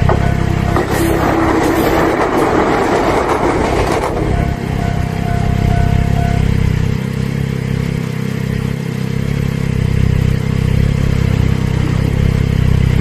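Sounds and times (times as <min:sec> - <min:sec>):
vehicle engines rumbling: 0:00.0 - 0:13.0.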